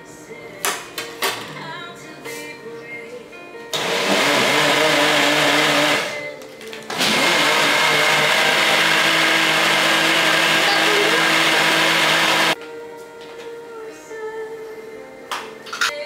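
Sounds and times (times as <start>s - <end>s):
electric blender running: 3.8s - 6.3s, 6.9s - 12.6s.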